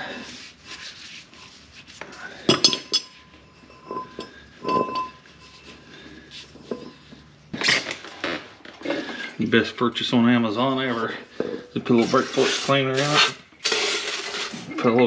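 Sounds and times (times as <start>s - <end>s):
metal parts clinking and knocking: 2.5s - 3.2s.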